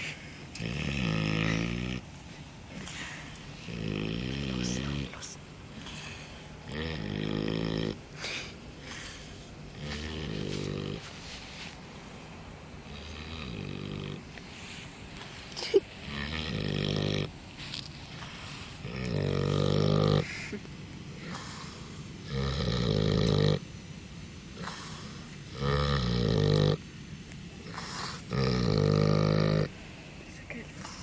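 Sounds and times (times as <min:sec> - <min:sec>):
wild boar snoring: 0:00.0 - 0:02.1, 0:02.7 - 0:12.2, 0:12.8 - 0:15.4, 0:16.0 - 0:23.7, 0:24.5 - 0:26.9, 0:27.6 - 0:30.0.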